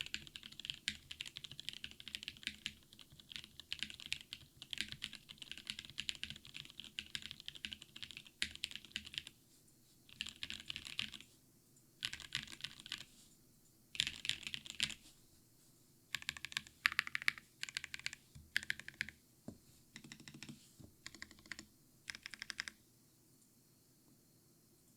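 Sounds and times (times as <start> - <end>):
mechanical keyboard typing: 0.0 - 9.3, 10.1 - 11.2, 12.0 - 13.1, 14.0 - 15.0, 16.1 - 19.2, 20.0 - 22.8.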